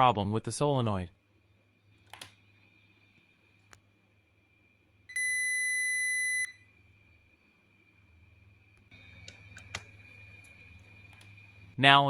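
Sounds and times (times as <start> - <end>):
multimeter continuity beep: 5.1 - 6.7.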